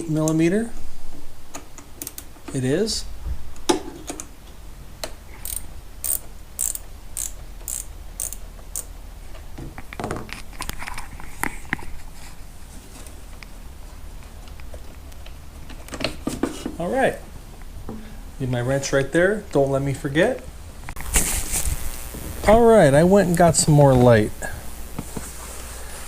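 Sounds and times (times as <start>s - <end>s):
ratchet wrench clicking: 5.4s - 9.0s.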